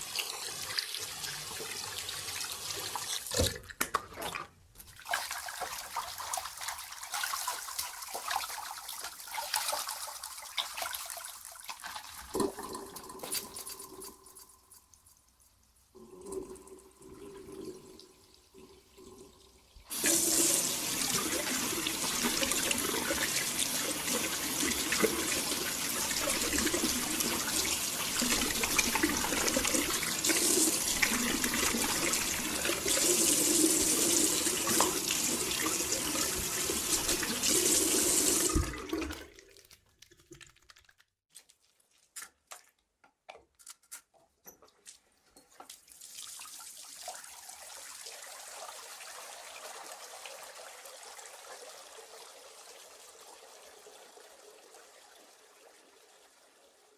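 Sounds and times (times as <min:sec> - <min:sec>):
tap water running into sink: 0:04.9 - 0:14.2, 0:16.1 - 0:39.4.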